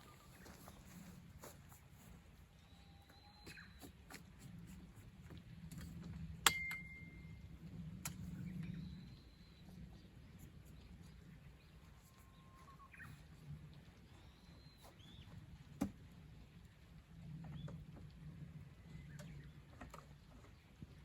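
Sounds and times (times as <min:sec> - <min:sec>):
low uneven rumble: 0:04.2 - 0:21.0
faint bird calls: 0:11.7 - 0:13.4.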